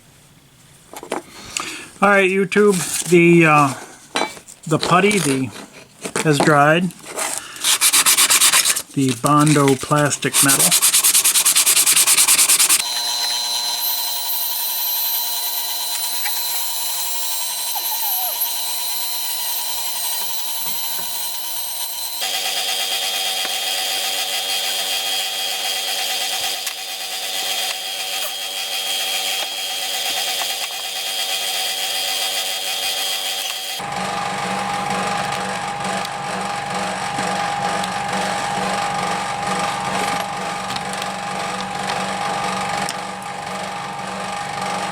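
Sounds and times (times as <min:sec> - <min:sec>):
power sander whining and hissing: 0:10.3 - 0:44.7.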